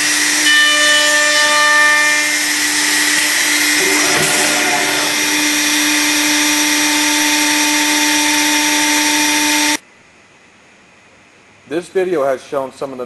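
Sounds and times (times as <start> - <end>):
machine spindle whining: 0.0 - 9.8.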